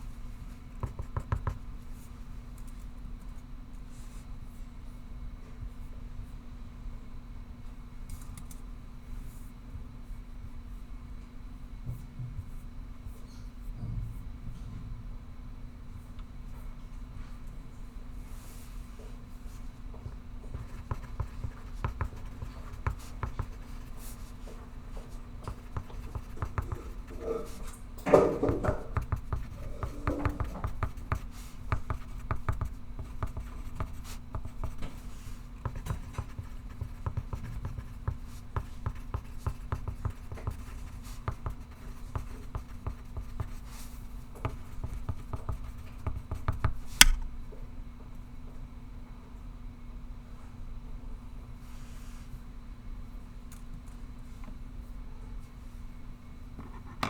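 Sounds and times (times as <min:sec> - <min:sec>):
pencil writing on paper: 0:00.8 - 0:01.6, 0:20.5 - 0:47.2
steady low hum: 0:12.2 - 0:48.8
sharp click: 0:47.0 - 0:47.2.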